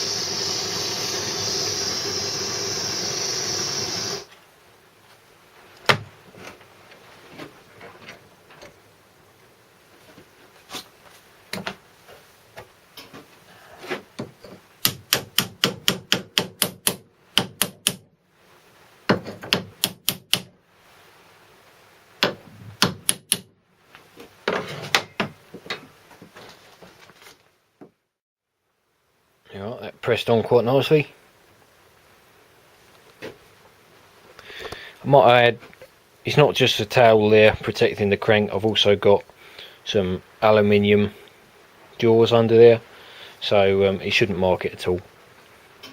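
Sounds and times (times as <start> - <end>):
sharp metallic taps: 19.5 - 20.5, 22.2 - 23.5.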